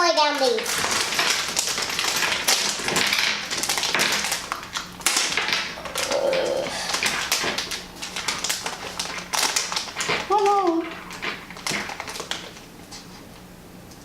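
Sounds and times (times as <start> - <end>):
plastic packaging crinkling: 0.2 - 13.1.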